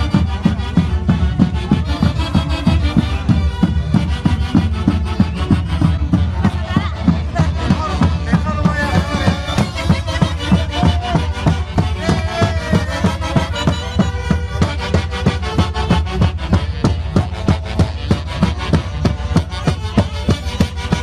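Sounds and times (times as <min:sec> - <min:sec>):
band playing melody: 0:00.0 - 0:21.0
fast percussive beat: 0:00.0 - 0:21.0
heavy bass: 0:00.0 - 0:21.0.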